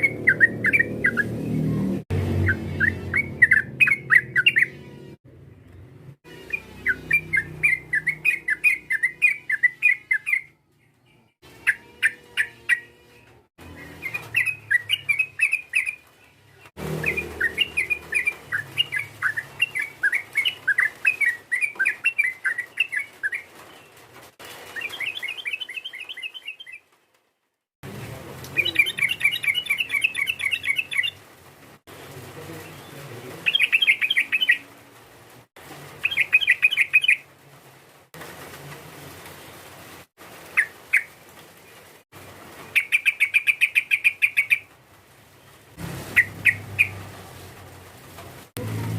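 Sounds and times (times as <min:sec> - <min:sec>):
bulbul bubbly chattering song: 0:28.5 - 0:31.2.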